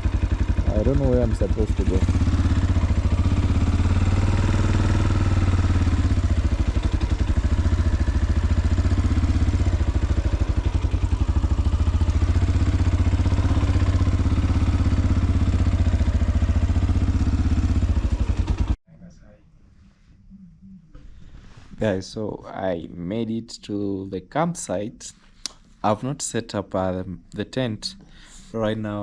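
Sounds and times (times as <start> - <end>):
motorcycle engine idling: 0.0 - 18.8.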